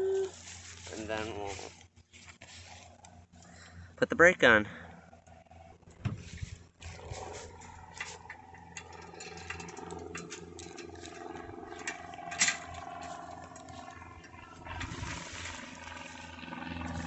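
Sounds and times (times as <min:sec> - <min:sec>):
steady low hum: 0:00.0 - 0:17.0
small metal clicks and knocks: 0:08.0 - 0:12.9.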